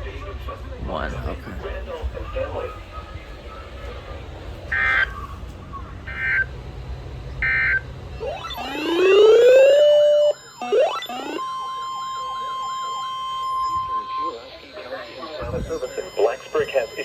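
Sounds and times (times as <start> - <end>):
steady alert tone: 1.2 - 13.7
digital header tone bursts: 1.2 - 17.0
rising siren-like wail: 1.2 - 17.0.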